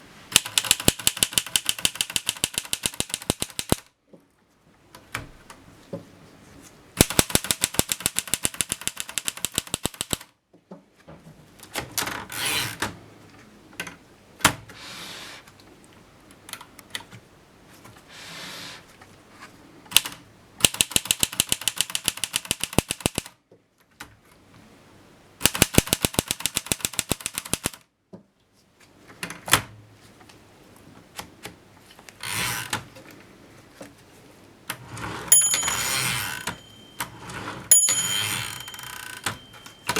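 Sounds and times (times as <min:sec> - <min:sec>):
typewriter key strikes: 0:00.3 - 0:03.8, 0:07.0 - 0:10.2, 0:19.9 - 0:23.3, 0:25.5 - 0:27.8, 0:35.3 - 0:39.9
typewriter mechanical rasps: 0:00.3 - 0:03.8, 0:07.0 - 0:10.2, 0:19.9 - 0:23.3, 0:25.4 - 0:27.8, 0:38.1 - 0:39.9.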